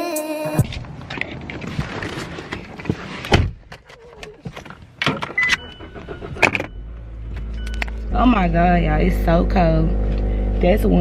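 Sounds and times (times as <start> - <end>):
car door shutting: 2.0 - 8.0
low steady rumble: 5.4 - 11.0.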